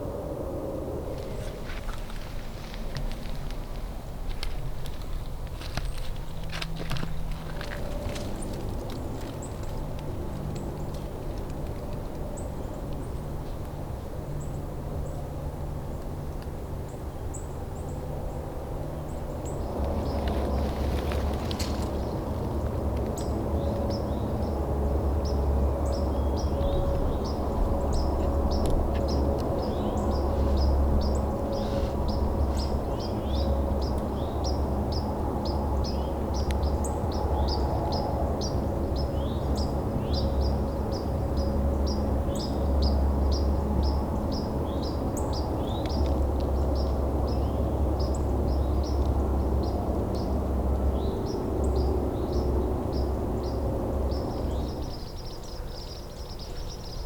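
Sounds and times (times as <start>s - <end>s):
steady low rumble: 0.0s - 57.0s
bird chirping: 19.1s - 57.0s.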